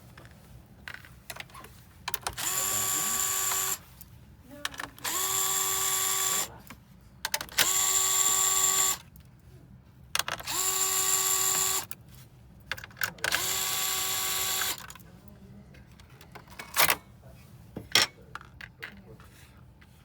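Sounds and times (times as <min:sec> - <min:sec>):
power screwdriver whining: 0:02.3 - 0:03.8, 0:05.0 - 0:06.5, 0:07.5 - 0:09.0, 0:10.4 - 0:11.9, 0:13.3 - 0:14.8.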